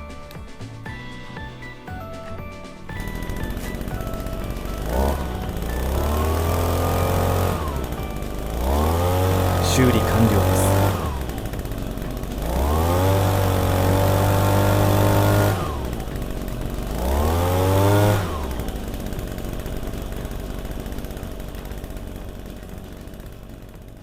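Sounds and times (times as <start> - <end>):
engine blower revving: 0.0 - 24.0.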